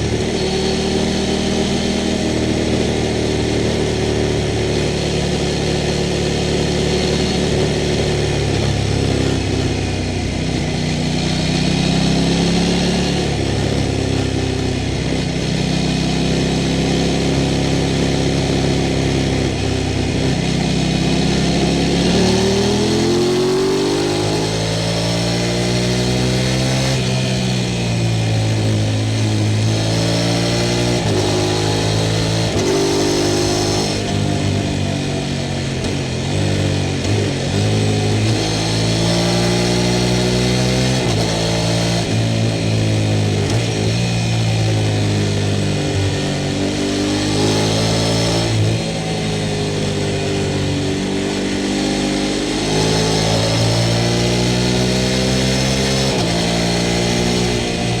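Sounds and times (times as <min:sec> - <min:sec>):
motorcycle engine running: 0:00.0 - 0:58.0.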